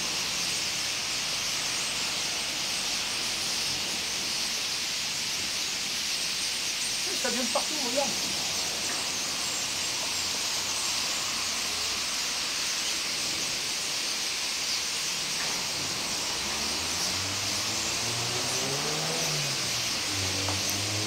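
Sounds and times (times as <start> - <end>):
steady high hiss: 0.0 - 21.0
vehicle engine rising in pitch: 15.6 - 21.0.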